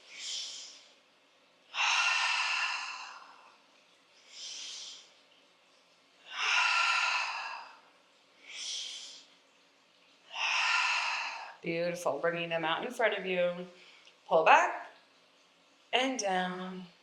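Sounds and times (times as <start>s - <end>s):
person breathing deeply: 1.8s - 3.4s, 6.3s - 7.8s.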